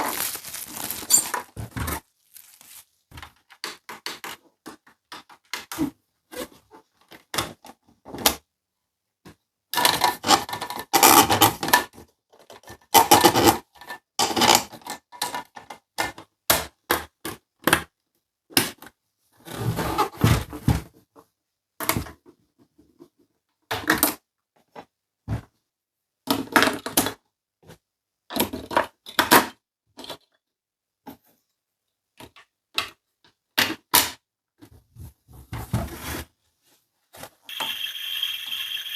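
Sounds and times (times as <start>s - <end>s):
packaging rustling and scraping: 0.0s - 3.4s.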